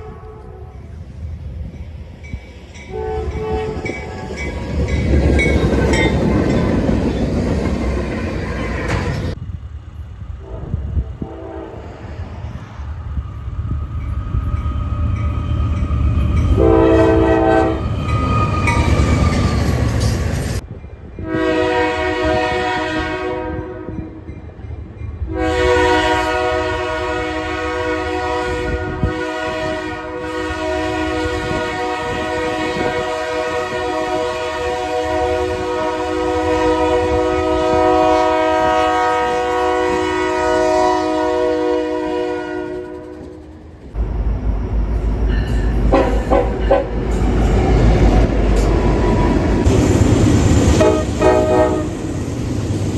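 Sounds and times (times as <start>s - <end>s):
multi-note train air horn: 0.0s - 1.0s, 2.9s - 4.3s, 10.4s - 12.0s, 16.5s - 17.9s, 21.2s - 24.1s, 25.3s - 43.4s, 45.8s - 47.0s, 50.7s - 52.0s
train horn blast: 0.0s - 1.0s, 2.9s - 4.4s, 10.4s - 12.0s, 16.5s - 18.0s, 21.2s - 24.2s, 25.3s - 44.1s, 45.4s - 47.2s, 50.6s - 52.0s
train rumbling past: 0.0s - 52.9s.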